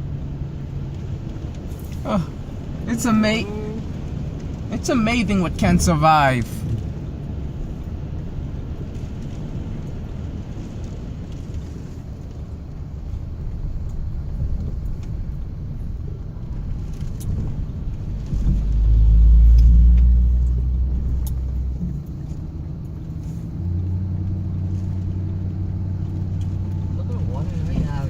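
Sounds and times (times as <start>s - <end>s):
car engine and road rumble: 0.0s - 28.0s.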